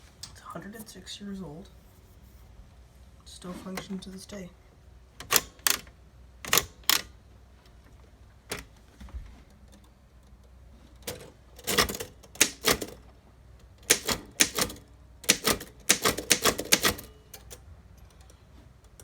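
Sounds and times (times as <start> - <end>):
typewriter typebar strikes: 11.7 - 13.0, 13.9 - 17.1.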